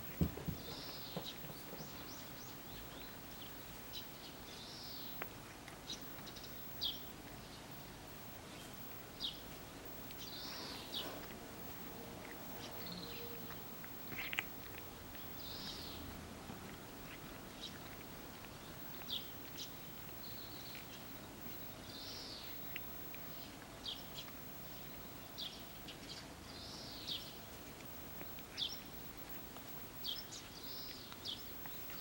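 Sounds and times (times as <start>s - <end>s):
low steady background: 0.0s - 32.0s
small birds chirping: 0.0s - 32.0s
cat licking clicks: 8.9s - 15.9s, 16.5s - 21.6s, 22.4s - 25.0s.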